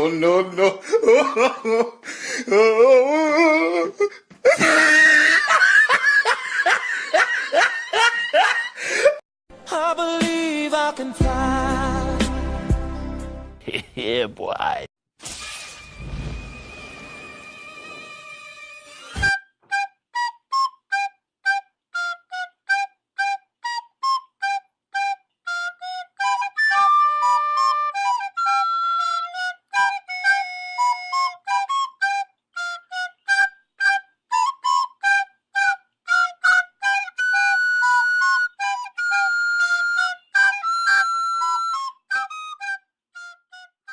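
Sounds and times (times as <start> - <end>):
solo flute melody: 16.3 - 43.9.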